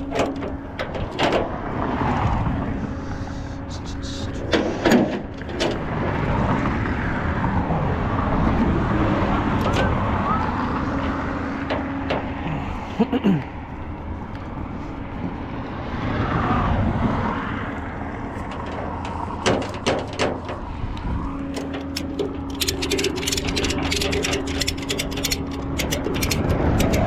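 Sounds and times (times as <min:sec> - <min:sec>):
vehicle engine idling: 0:00.0 - 0:06.1, 0:06.7 - 0:15.8, 0:17.6 - 0:27.0
held mechanical tone: 0:21.2 - 0:27.0.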